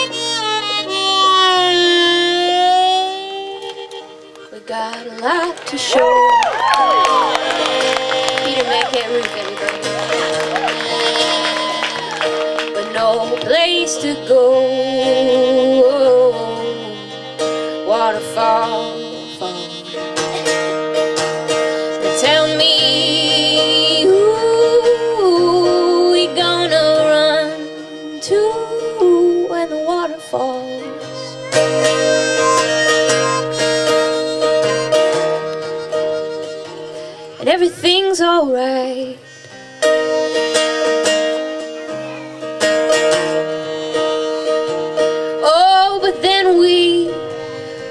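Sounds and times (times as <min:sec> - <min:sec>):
acoustic band playing: 0:00.0 - 0:47.9
harmonica melody: 0:00.0 - 0:47.9.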